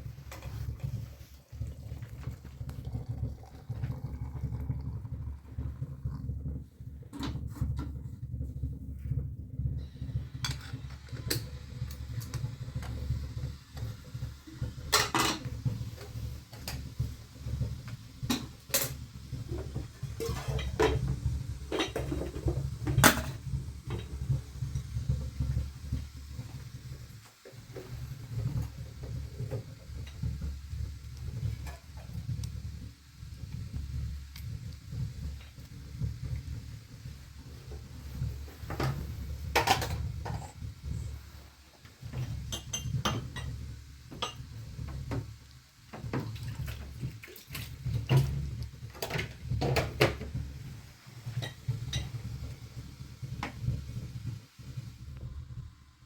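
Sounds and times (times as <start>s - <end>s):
household objects knocking and clinking: 18.3s - 25.2s, 42.2s - 43.6s.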